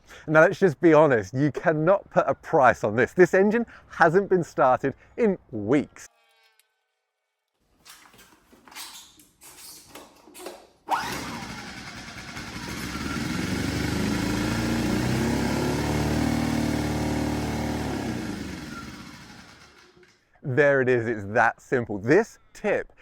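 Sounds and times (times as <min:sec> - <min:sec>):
small engine running: 0:10.9 - 0:20.1.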